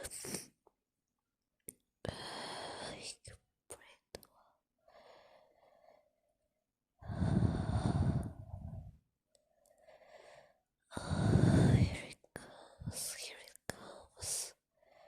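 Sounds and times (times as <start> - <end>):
breath drawn in: 7.1 - 8.9.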